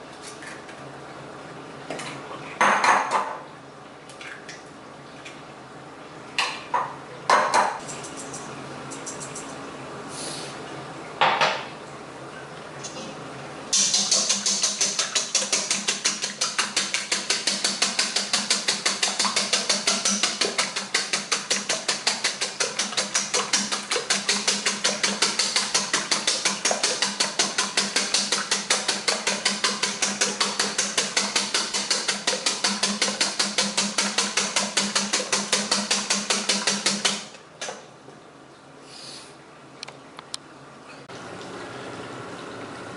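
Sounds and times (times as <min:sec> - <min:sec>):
fork beating eggs in a bowl: 0:07.7 - 0:09.5, 0:13.8 - 0:37.2.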